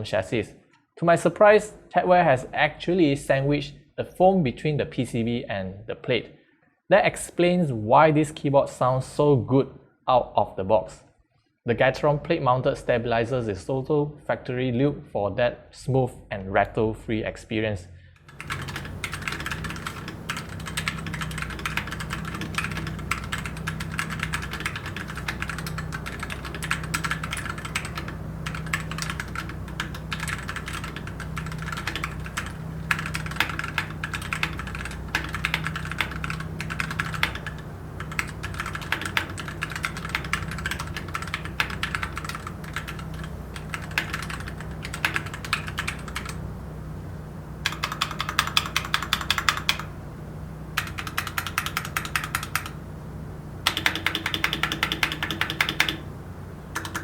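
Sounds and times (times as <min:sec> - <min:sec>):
faint steady hum: 0:15.9 - 0:57.0
mechanical keyboard typing: 0:18.2 - 0:46.4, 0:47.6 - 0:49.9, 0:50.8 - 0:52.8, 0:53.6 - 0:56.1, 0:56.7 - 0:57.0.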